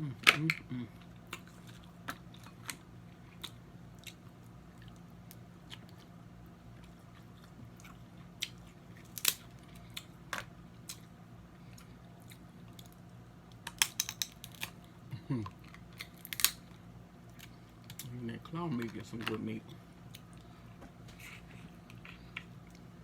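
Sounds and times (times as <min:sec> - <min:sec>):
faint low hum: 0:00.0 - 0:23.0
crab shell cracking: 0:08.4 - 0:10.1, 0:12.3 - 0:14.8, 0:15.6 - 0:16.7.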